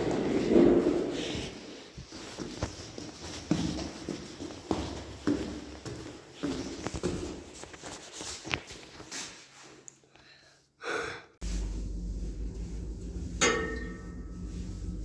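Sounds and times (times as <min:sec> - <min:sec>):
elevator running hum: 0:11.4 - 0:15.0.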